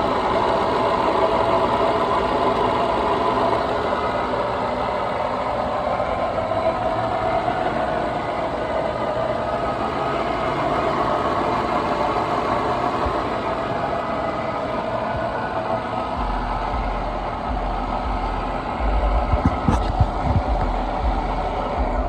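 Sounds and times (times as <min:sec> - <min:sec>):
car engine idling roughly: 0:00.0 - 0:22.0.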